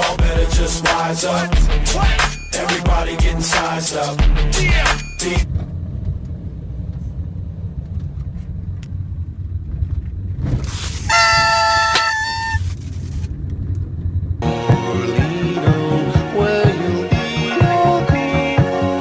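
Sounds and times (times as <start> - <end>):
vehicle engine low rumble: 5.5 - 10.9, 12.6 - 14.4
vehicle horn: 11.1 - 12.6.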